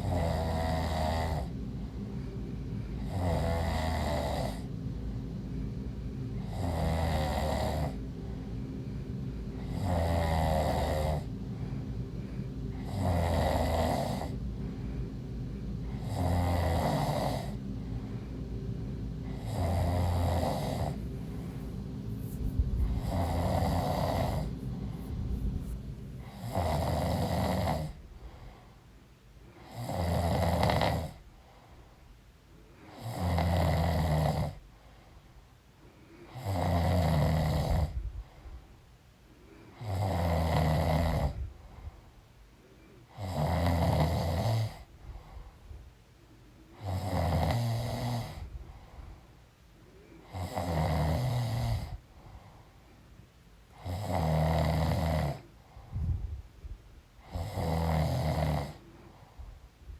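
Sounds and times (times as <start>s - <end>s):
woman snoring: 0.0s - 2.0s, 2.9s - 4.7s, 6.4s - 8.2s, 9.5s - 11.3s, 12.3s - 14.4s, 15.8s - 17.6s, 19.2s - 28.1s, 29.6s - 31.2s, 32.9s - 34.6s, 36.3s - 38.0s, 39.7s - 41.4s, 43.1s - 44.9s, 46.8s - 48.5s, 50.2s - 52.0s, 53.8s - 56.0s, 57.2s - 58.9s
low hum: 0.0s - 29.6s.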